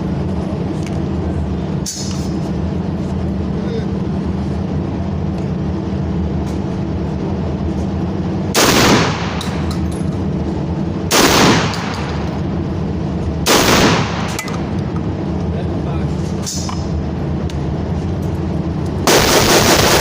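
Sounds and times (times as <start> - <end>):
steady low hum: 0.0 - 20.0
gunshots with echo: 8.5 - 9.7, 11.1 - 12.3, 13.4 - 14.7, 19.1 - 20.0.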